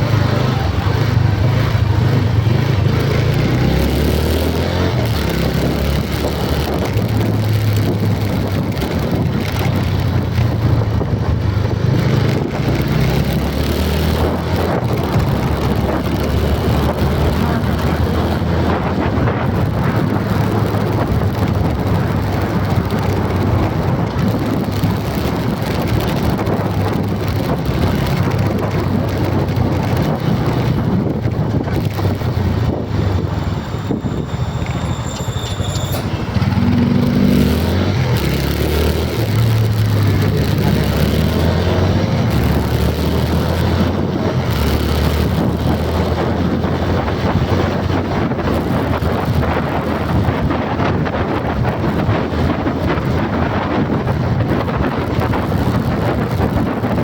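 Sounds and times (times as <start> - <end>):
road and wind noise: 0.0 - 57.0.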